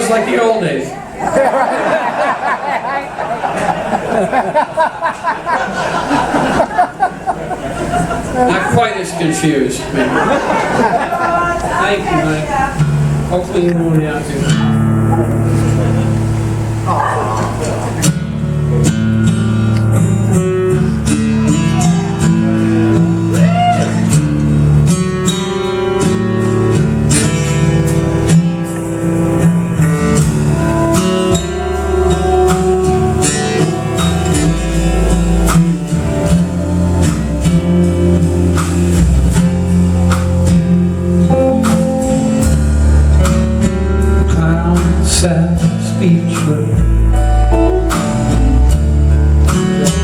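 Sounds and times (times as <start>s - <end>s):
guitars: 0.0s - 50.0s
live band playing instrumental: 0.0s - 50.0s
steady low notes: 12.8s - 50.0s.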